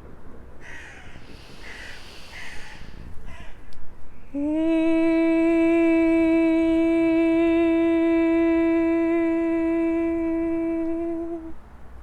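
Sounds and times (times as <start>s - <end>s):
woman singing a long vowel: 4.3s - 11.6s.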